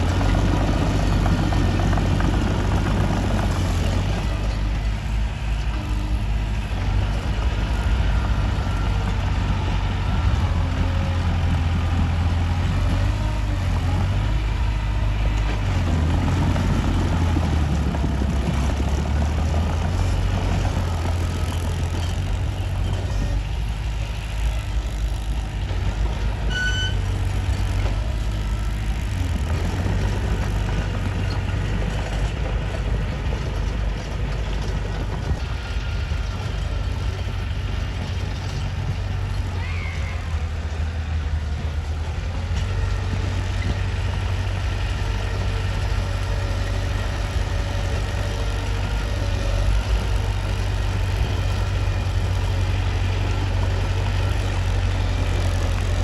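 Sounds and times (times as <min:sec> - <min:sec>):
bulldozer diesel engine droning: 0:00.0 - 0:56.0.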